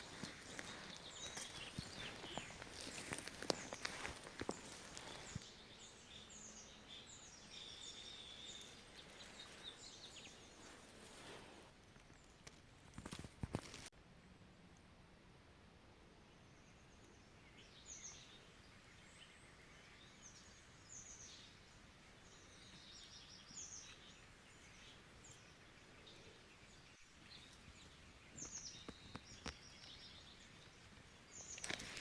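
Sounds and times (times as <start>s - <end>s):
songbird chirps and calls: 0.0s - 12.5s, 16.2s - 32.0s
low steady hiss: 0.0s - 12.9s, 13.9s - 32.0s.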